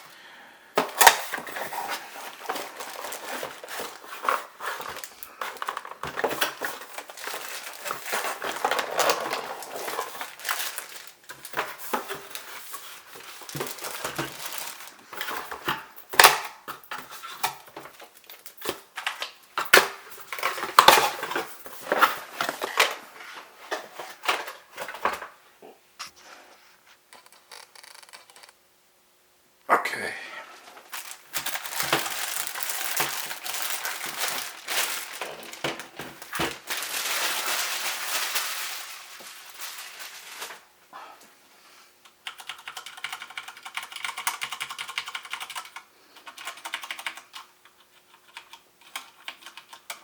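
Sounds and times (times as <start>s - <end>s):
packaging crinkling and rustling: 0.8s - 25.4s, 30.6s - 40.7s.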